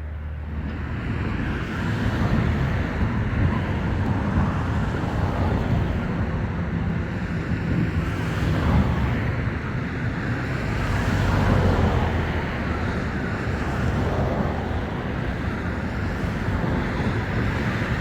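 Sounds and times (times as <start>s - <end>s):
strong wind on microphone: 0.5s - 18.0s.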